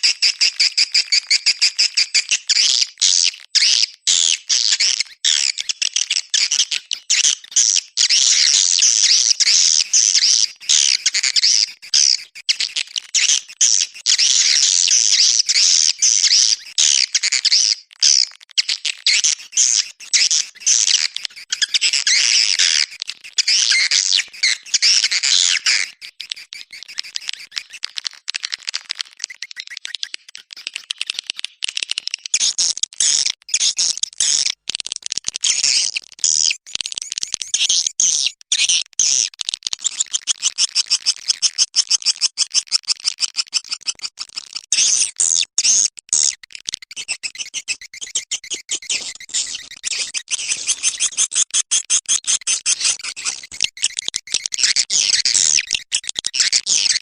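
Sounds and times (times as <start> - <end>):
rapid high twittering chirps: 6.4 - 30.8, 35.4 - 38.8, 44.8 - 57.0.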